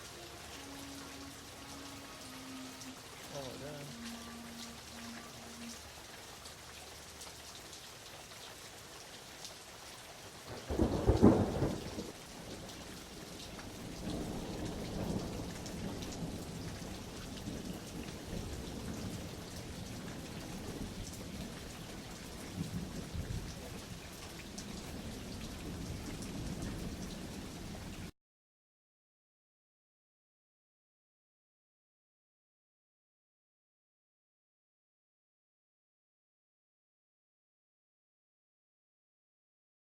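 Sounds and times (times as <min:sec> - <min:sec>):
heavy rain: 0:00.0 - 0:28.1
rolling thunder rumbling: 0:10.5 - 0:27.8
loud thunderclap: 0:10.6 - 0:12.7, 0:13.7 - 0:17.6.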